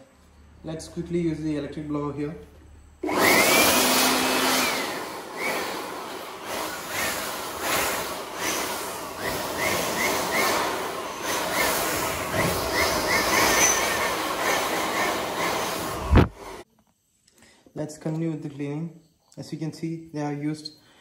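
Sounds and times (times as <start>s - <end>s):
air blower rushing: 3.0s - 16.6s.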